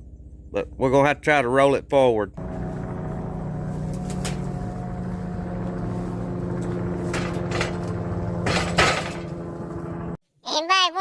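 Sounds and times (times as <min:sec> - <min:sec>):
sawmill engine running: 0:02.4 - 0:10.2.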